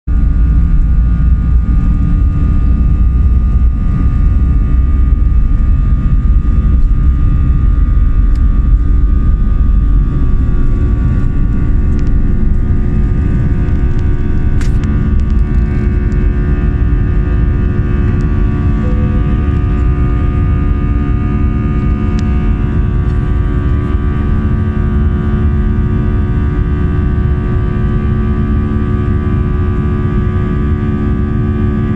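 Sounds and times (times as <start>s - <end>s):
jet engine rumble: 0.1s - 31.9s
jet engine whine: 0.1s - 31.9s.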